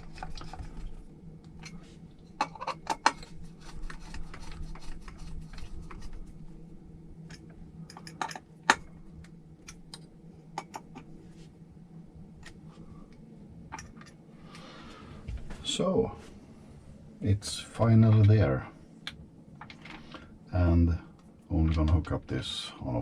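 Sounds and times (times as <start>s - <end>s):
small parts clicking and tapping: 0.0s - 6.2s, 7.3s - 11.1s, 12.4s - 14.2s.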